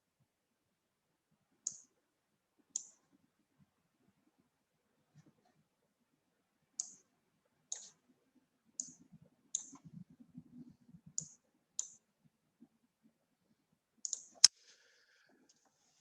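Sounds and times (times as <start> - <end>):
computer mouse clicking: 1.7 - 1.9, 2.7 - 3.0, 6.8 - 7.0, 7.7 - 8.0, 8.8 - 10.0, 11.1 - 12.1, 14.0 - 14.6.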